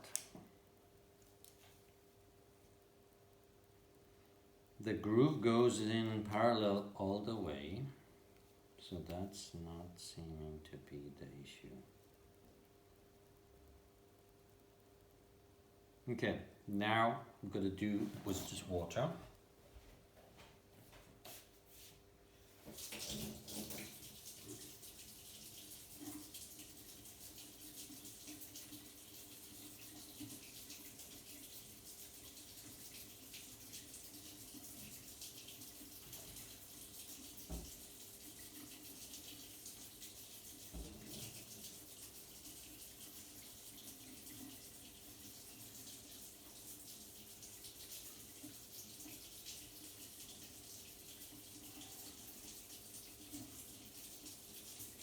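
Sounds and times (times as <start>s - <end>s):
water running from a tap: 22.6s - 55.0s.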